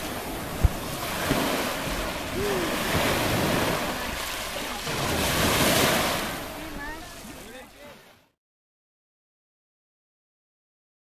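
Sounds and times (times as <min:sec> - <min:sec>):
surf washing on shore: 0:00.0 - 0:08.4.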